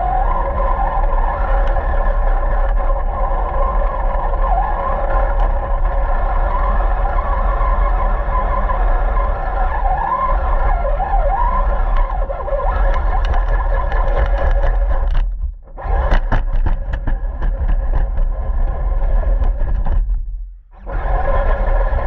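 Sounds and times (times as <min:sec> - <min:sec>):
rc car motor whine: 0:00.0 - 0:15.2
low rumble: 0:00.0 - 0:22.0
clicks and scrapes from ground: 0:11.9 - 0:20.4.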